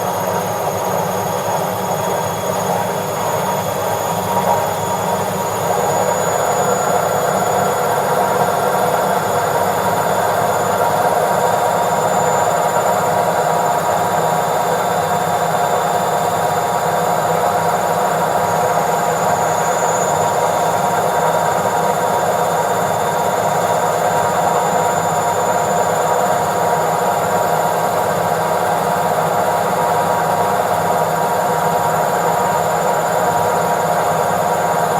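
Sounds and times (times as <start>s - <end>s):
washing machine spinning: 0.0s - 34.9s.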